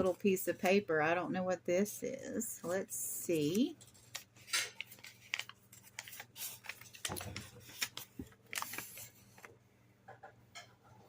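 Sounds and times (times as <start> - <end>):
paper crinkling: 2.6 - 9.5.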